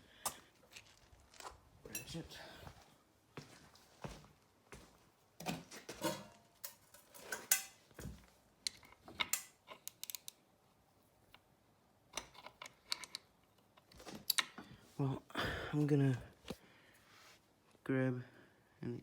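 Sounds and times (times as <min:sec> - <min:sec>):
metal hand tools clinking: 0:01.9 - 0:02.2, 0:06.0 - 0:07.8.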